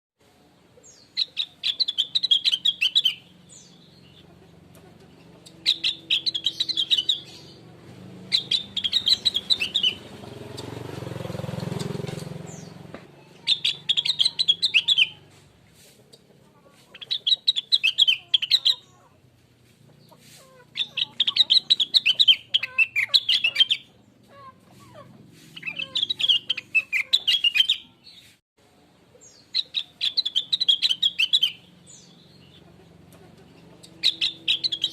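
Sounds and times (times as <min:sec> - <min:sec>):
bird chirping twitters: 0:00.8 - 0:04.4, 0:05.0 - 0:15.4, 0:16.9 - 0:19.1, 0:19.9 - 0:24.5, 0:25.5 - 0:28.3, 0:29.1 - 0:34.9.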